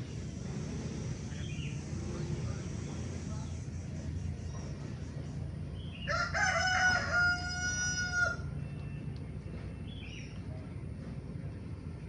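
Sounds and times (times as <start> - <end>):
steady low rumble: 0.0 - 12.0
rooster crowing: 5.9 - 8.6.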